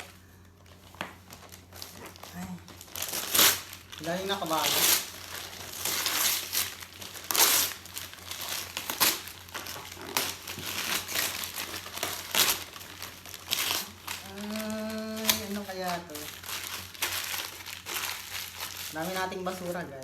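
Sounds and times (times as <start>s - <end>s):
plastic packaging crinkling: 0.0s - 20.0s.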